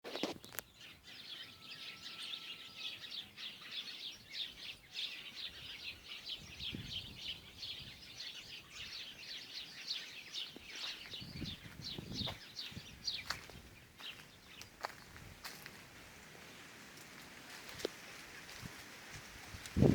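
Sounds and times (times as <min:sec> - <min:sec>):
small birds chirping: 0:00.1 - 0:19.9.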